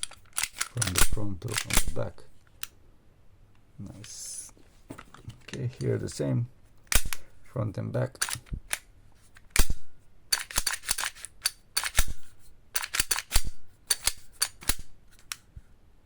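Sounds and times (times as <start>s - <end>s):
pistol slides racking clacks: 0.0s - 2.8s, 6.9s - 7.3s, 8.2s - 15.5s.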